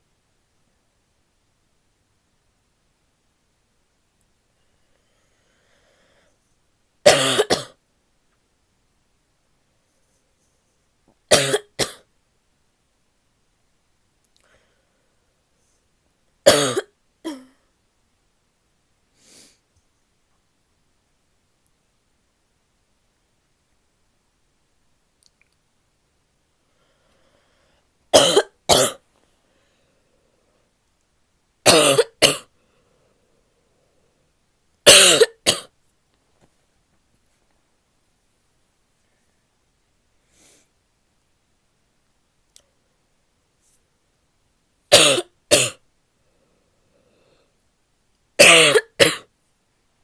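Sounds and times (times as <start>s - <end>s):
woman breathing: 4.6s - 6.5s, 14.4s - 15.4s, 26.6s - 28.0s, 29.3s - 30.8s, 32.5s - 34.3s, 46.2s - 47.6s
woman coughing: 7.1s - 7.8s, 11.3s - 12.0s, 16.5s - 17.6s, 28.2s - 29.0s, 31.7s - 32.5s, 34.9s - 35.7s, 44.9s - 45.8s, 48.4s - 49.3s.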